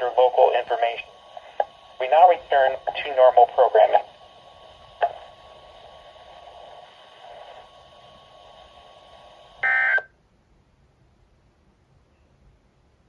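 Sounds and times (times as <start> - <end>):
radio hiss: 0.0 - 10.1
digital data tones: 9.6 - 10.1.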